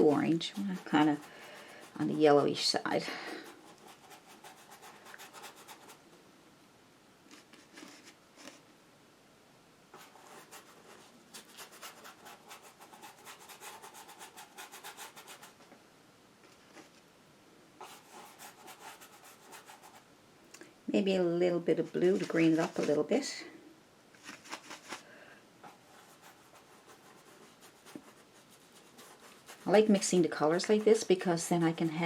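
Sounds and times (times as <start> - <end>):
bristle brush scrubbing: 0.0 - 2.4, 26.2 - 32.0.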